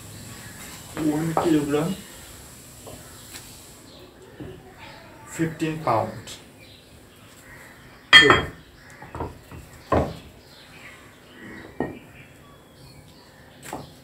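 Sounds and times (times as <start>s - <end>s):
weight plates clinking: 8.2s - 8.6s.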